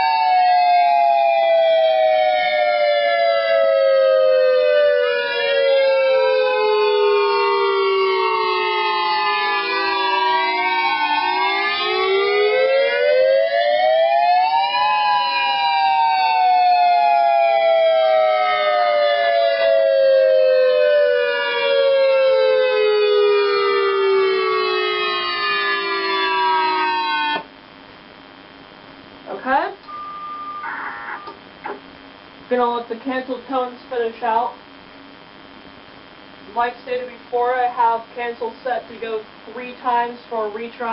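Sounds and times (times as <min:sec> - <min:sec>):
outdoor warning sirens wailing: 0:00.0 - 0:27.5, 0:29.9 - 0:32.4.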